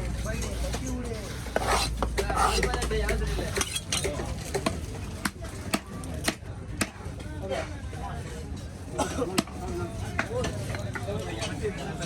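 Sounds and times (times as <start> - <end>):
knife scraping fish: 1.2 - 4.1.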